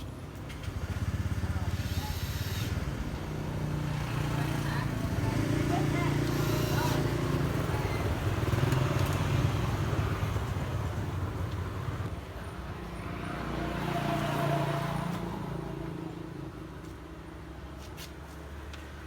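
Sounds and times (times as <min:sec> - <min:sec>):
vehicle rumbling past: 0:12.8 - 0:16.4.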